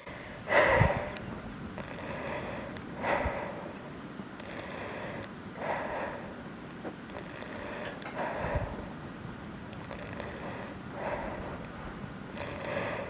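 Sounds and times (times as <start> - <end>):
woman breathing deeply: 0.0 - 6.5, 7.1 - 13.0
lung crackles: 4.4 - 8.8, 9.7 - 13.0.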